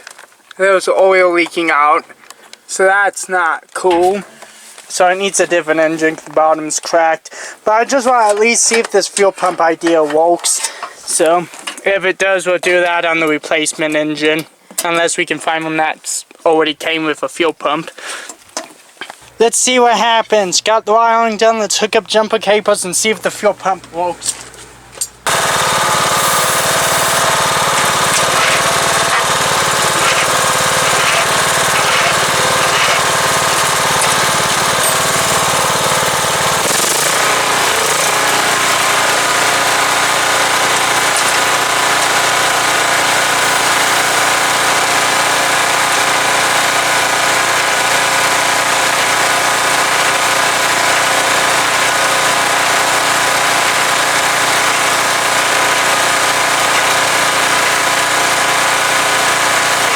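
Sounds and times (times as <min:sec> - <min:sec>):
lawnmower engine running: 0:23.7 - 0:59.9.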